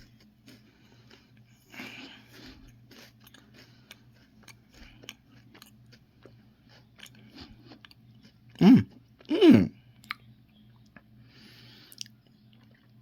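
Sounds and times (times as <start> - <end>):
chewing crunchy wafer: 0.0 - 13.0.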